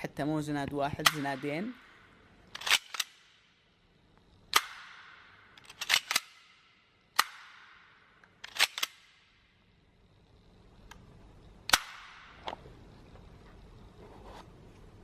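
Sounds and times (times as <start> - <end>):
airsoft pistol metallic cracks: 1.0 - 3.6, 4.5 - 9.5, 11.6 - 12.6.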